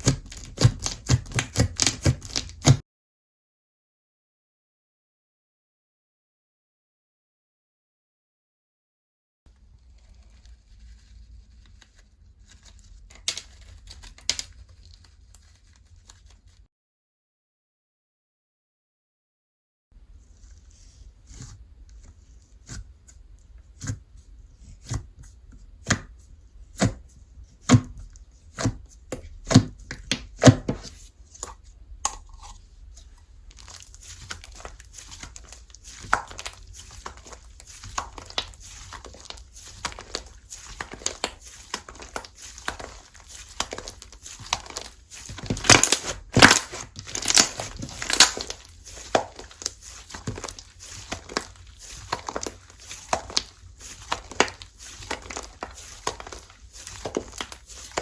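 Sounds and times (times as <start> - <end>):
slime crackling and crinkling: 0.0 - 2.8, 9.5 - 16.7, 29.4 - 58.0
slime popping: 33.5 - 58.0.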